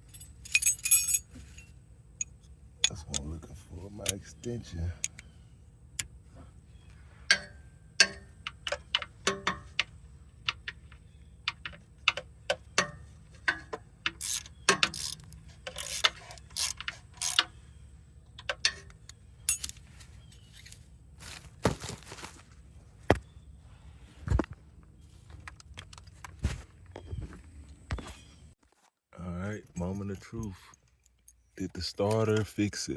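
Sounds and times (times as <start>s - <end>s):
metal clinks and knocks: 0.0s - 3.2s, 18.4s - 19.9s.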